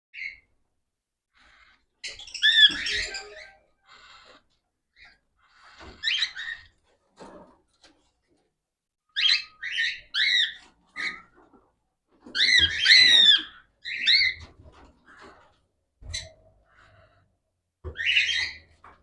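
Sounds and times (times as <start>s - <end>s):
cockatiels chirping and calling: 0.2s - 0.5s, 1.4s - 6.8s, 9.1s - 11.6s, 12.2s - 17.2s, 17.8s - 18.8s.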